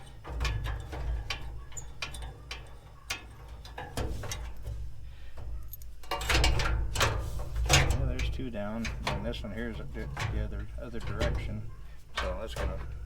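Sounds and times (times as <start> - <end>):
metal clatter: 0.0 - 13.0.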